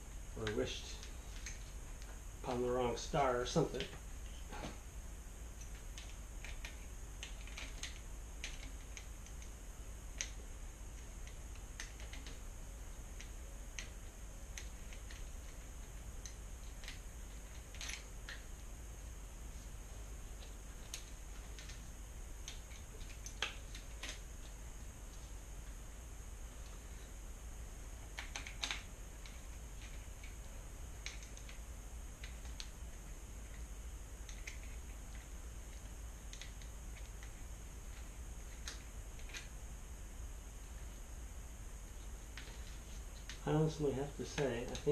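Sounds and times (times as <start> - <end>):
steady low hum: 0.0 - 44.9
small clicks of bicycle parts: 0.4 - 2.6, 5.6 - 9.5, 10.2 - 10.4, 11.0 - 12.4, 14.6 - 18.5, 28.1 - 30.4, 31.0 - 31.6, 33.5 - 39.5.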